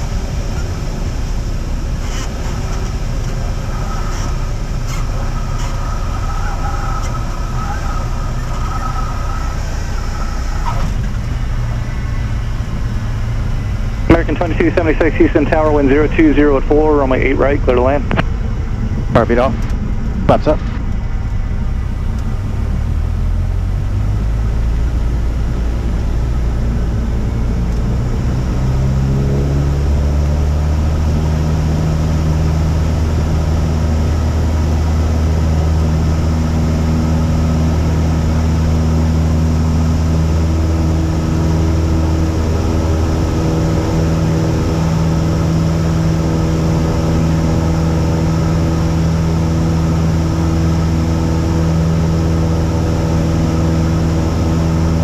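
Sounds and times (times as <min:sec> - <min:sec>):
propeller plane engine at full power: 0:00.0 - 0:55.0.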